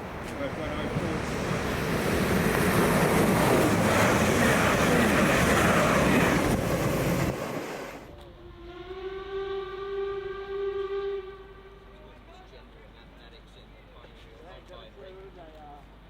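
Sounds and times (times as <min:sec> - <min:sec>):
train rumbling past on rails: 0:00.0 - 0:12.0
train whistle: 0:08.4 - 0:12.1.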